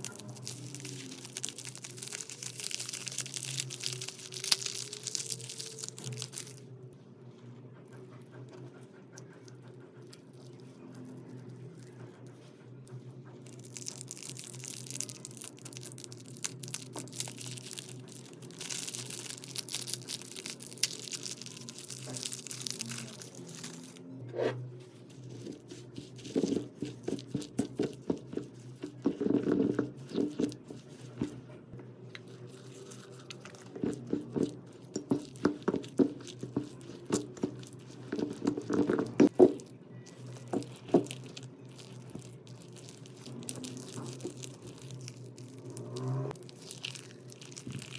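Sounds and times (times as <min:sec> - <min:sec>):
slime crackling hiss: 0:00.0 - 0:06.6.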